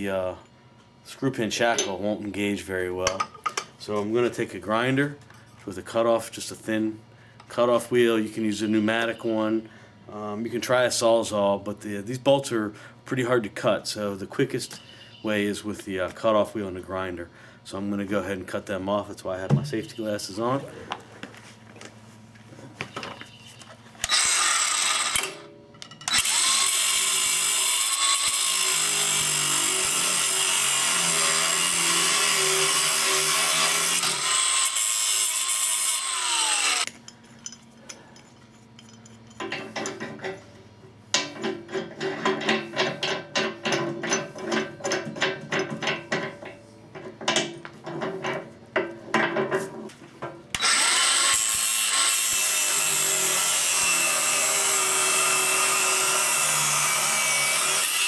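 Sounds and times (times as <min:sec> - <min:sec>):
angle grinder cutting bolts: 0:24.0 - 0:37.7, 0:50.5 - 0:58.0.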